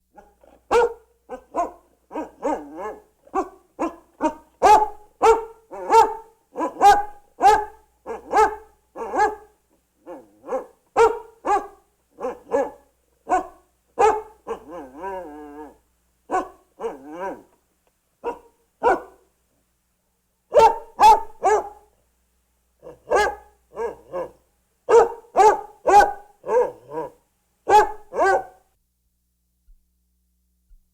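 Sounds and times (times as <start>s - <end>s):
dog barking: 0.1s - 17.5s, 18.2s - 19.3s, 20.5s - 22.0s, 22.8s - 28.7s
dog whining: 14.5s - 15.8s.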